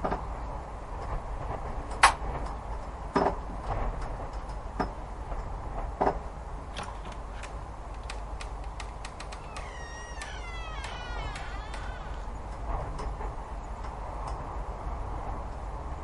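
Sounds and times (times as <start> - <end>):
low steady rumble: 0.0 - 16.0
irregular knocks and clicks: 1.9 - 14.4.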